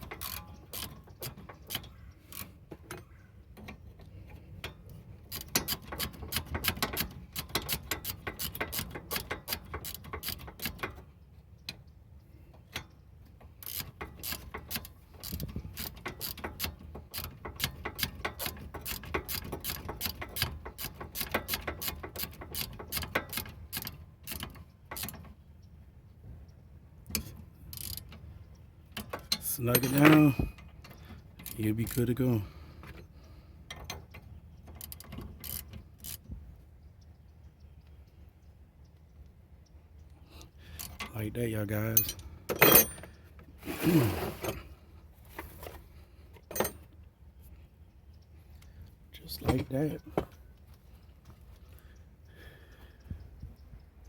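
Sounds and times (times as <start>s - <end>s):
hand ratchet clicking: 0.0s - 2.5s, 5.3s - 11.0s, 13.6s - 25.2s, 27.1s - 28.1s.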